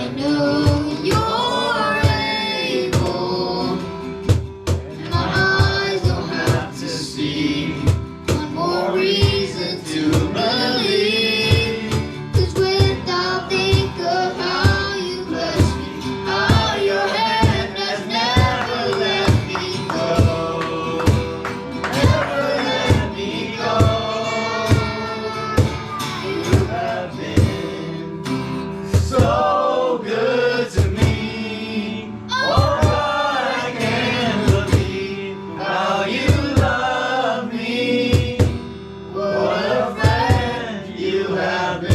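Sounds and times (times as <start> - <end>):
men and women singing: 0.0 - 41.9
band accompaniment with steady beat: 0.6 - 29.6, 30.7 - 31.5, 33.8 - 35.2, 36.1 - 36.9, 38.0 - 38.8, 40.0 - 40.6.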